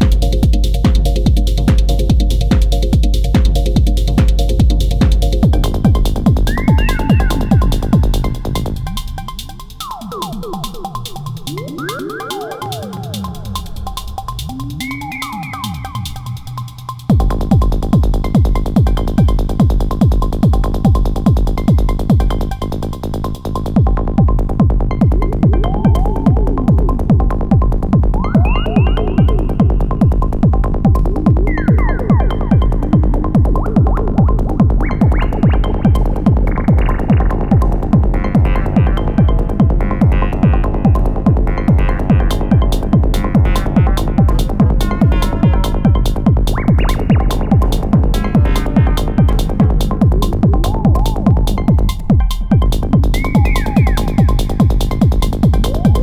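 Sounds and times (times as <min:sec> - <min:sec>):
kick drum: 0:00.0 - 0:08.4, 0:17.1 - 0:22.6, 0:23.8 - 0:56.0
rolling bass pulse: 0:00.0 - 0:56.0
gliding synth sweeps: 0:06.5 - 0:17.1.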